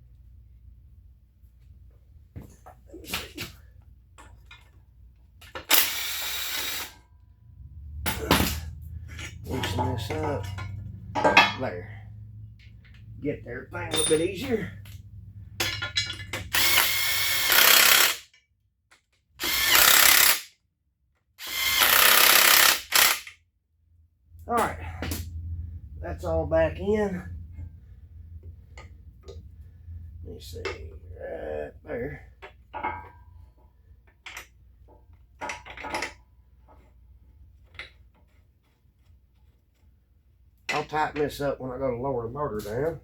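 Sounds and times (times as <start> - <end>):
low shop hum: 0.0 - 43.0
power tool driving bolts: 5.4 - 7.0, 8.1 - 10.6, 15.6 - 18.3, 19.4 - 20.5, 21.4 - 23.4
metallic clanks of tools: 8.0 - 12.0, 13.8 - 15.0, 15.6 - 16.6, 32.1 - 33.5, 35.4 - 36.3.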